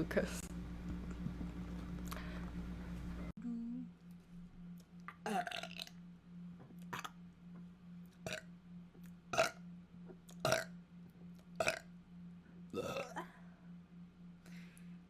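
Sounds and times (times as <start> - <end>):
person burping: 5.1 - 5.9, 6.9 - 7.2, 8.3 - 8.5, 9.3 - 9.6, 10.4 - 10.7, 11.6 - 11.9, 12.7 - 13.4.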